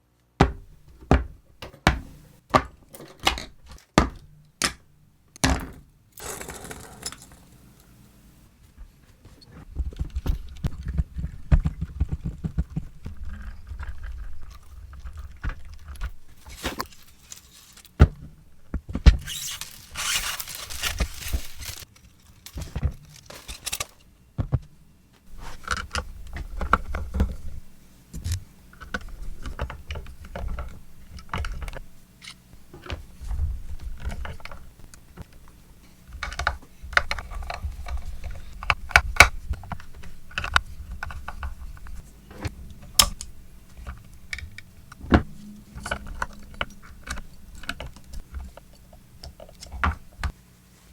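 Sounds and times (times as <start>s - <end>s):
rustling scrape: 13.2s - 18.0s, 19.2s - 23.7s, 25.3s - 50.9s
low hum: 25.3s - 50.3s.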